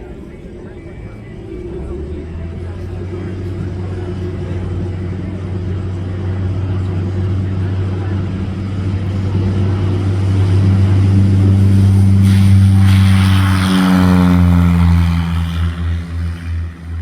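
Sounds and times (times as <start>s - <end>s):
propeller aircraft passing: 0.0s - 17.0s.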